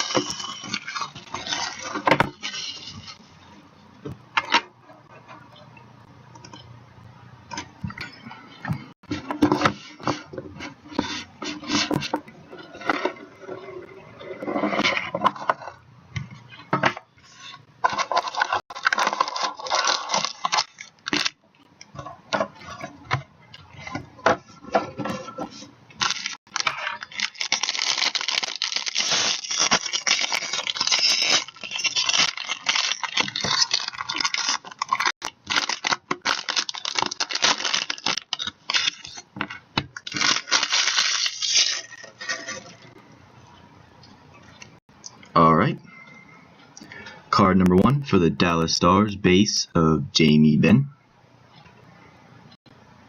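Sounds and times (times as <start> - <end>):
plastic wrapping tearing and crinkling: 0.0 - 3.3, 17.4 - 21.4, 25.0 - 43.0.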